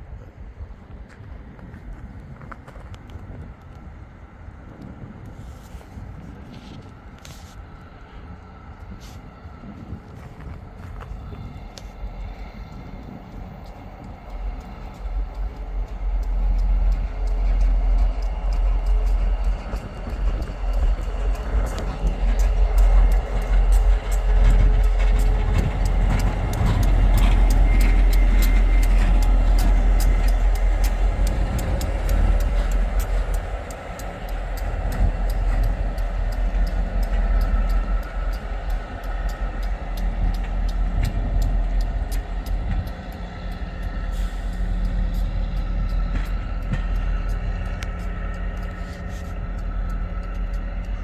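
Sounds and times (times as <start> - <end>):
model train rumbling: 0.0 - 51.0
faint steady tones: 3.8 - 51.0
evenly spaced track clicks: 11.1 - 51.0.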